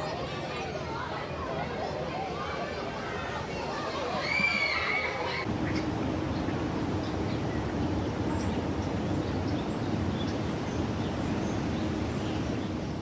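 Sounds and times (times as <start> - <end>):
faint steady hum: 0.2 - 13.0
steady rumbling noise: 5.1 - 13.0.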